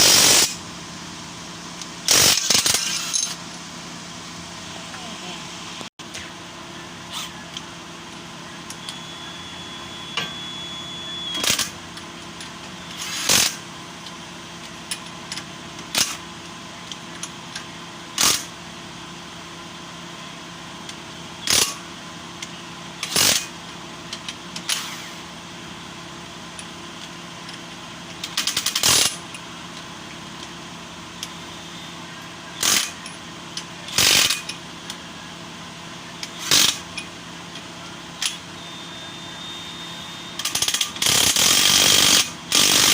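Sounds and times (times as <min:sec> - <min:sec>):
steady low hum: 0:00.0 - 0:42.9
sharp metallic tool bursts: 0:02.0 - 0:03.4, 0:12.9 - 0:13.6, 0:21.4 - 0:21.8, 0:28.2 - 0:29.2, 0:32.6 - 0:33.2, 0:33.9 - 0:34.6, 0:36.3 - 0:37.1, 0:39.7 - 0:42.9
ratchet clicks: 0:21.4 - 0:21.8, 0:22.4 - 0:23.5, 0:26.6 - 0:29.4, 0:32.6 - 0:35.0, 0:36.2 - 0:37.6, 0:40.4 - 0:42.9.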